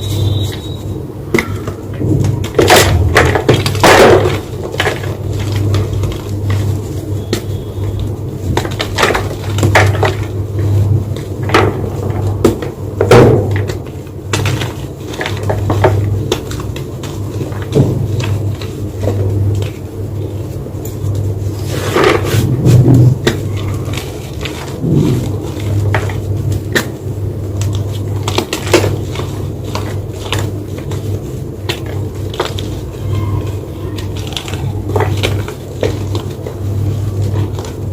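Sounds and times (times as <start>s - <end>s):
steady low hum: 0.0s - 37.9s
chalk crunching: 13.9s - 37.9s.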